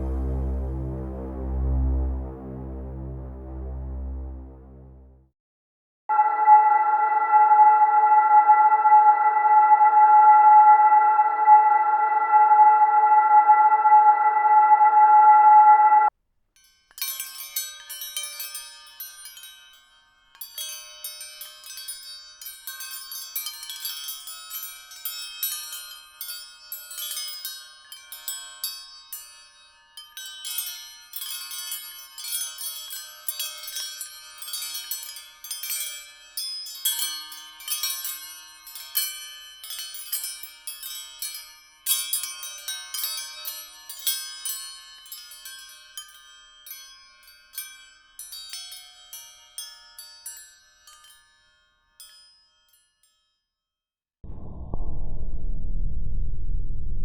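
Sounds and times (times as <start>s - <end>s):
metal wind chimes tinkling: 16.6s - 53.5s.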